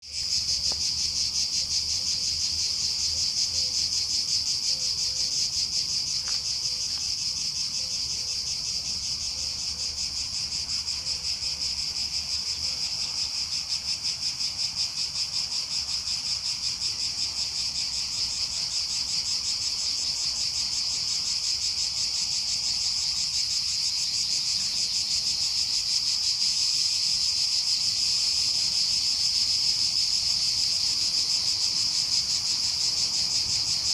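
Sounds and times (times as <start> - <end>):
cicadas buzzing: 0.0 - 33.9.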